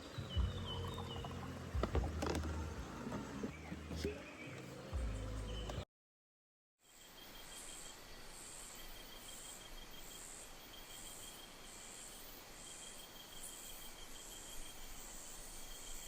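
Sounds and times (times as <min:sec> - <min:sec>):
faint high insect chirp: 0:06.8 - 0:16.0.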